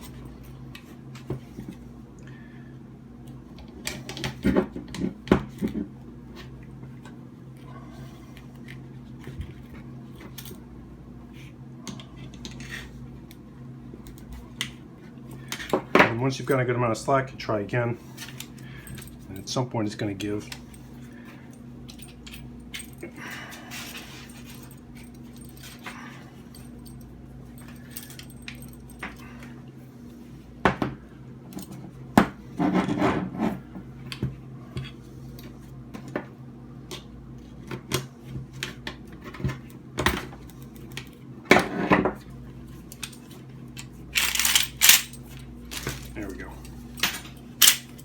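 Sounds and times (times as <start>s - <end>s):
metal ratchet clicking and rattling: 44.2s - 45.2s.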